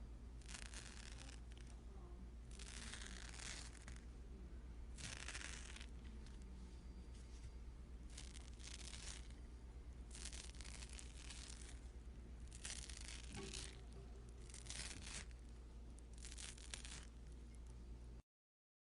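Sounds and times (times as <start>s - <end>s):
faint low hum: 0.0s - 18.2s
fruit peel tearing: 0.4s - 1.8s, 2.5s - 4.0s, 4.9s - 6.4s, 8.1s - 9.4s, 10.1s - 17.6s.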